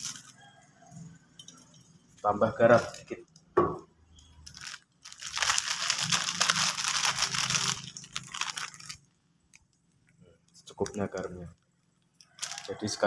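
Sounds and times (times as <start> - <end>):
salt crackling and rustling: 0.0 - 0.4, 4.3 - 13.0.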